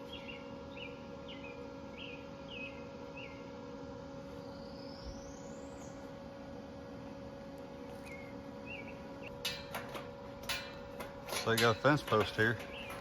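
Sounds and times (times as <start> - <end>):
steady hum: 0.0 - 13.0
bird chirping: 8.0 - 9.3, 12.6 - 13.0.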